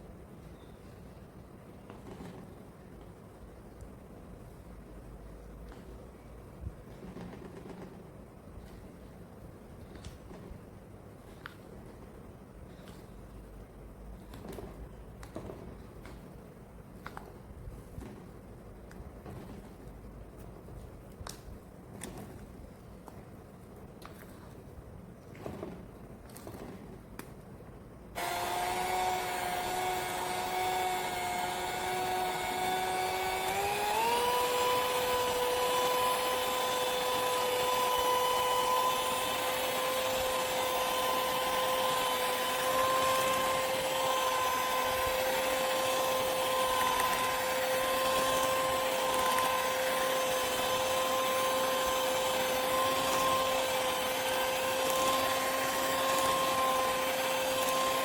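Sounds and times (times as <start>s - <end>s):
kitchen mixer motor whining: 28.2s - 58.0s.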